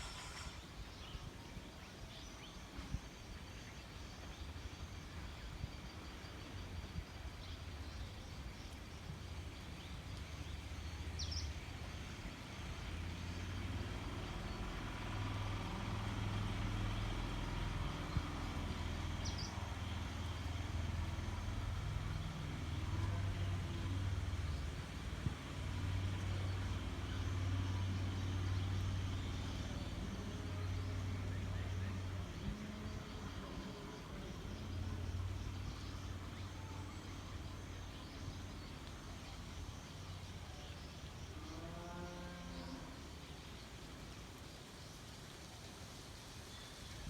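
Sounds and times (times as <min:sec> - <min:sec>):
vehicle engine hum: 0:09.4 - 0:41.6.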